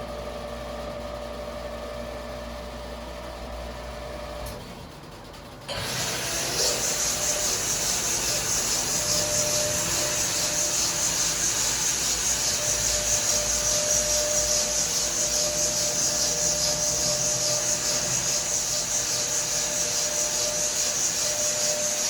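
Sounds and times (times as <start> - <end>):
faint motor hum: 5.7 - 22.0
polisher pad rasping on stone: 6.2 - 22.0.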